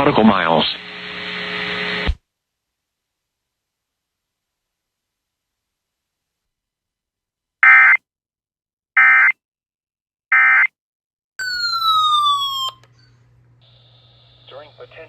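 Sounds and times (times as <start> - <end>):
falling electronic tone: 11.4 - 12.9.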